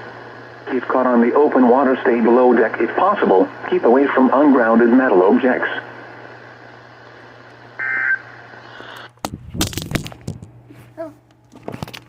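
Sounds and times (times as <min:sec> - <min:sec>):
radio hiss: 0:00.0 - 0:09.2
handling noise rustling and knocking: 0:09.2 - 0:10.7, 0:11.4 - 0:12.0.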